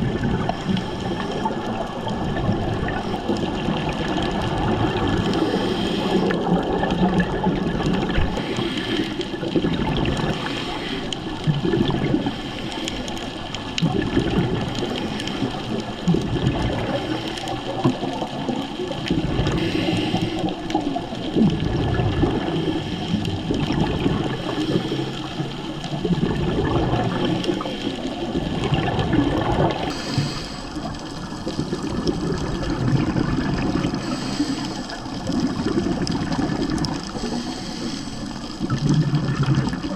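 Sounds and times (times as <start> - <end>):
regulator bubbles gurgling: 0.0 - 39.9
steady underwater noise: 0.0 - 39.9.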